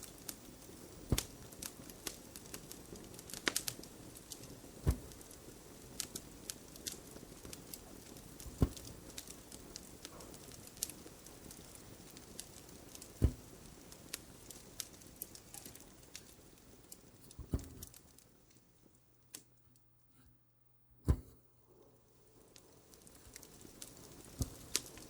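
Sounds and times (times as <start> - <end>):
low hiss: 0.0 - 19.5
fireplace crackling and popping: 0.0 - 19.6, 21.1 - 25.0
soft low thumps: 8.5 - 9.0.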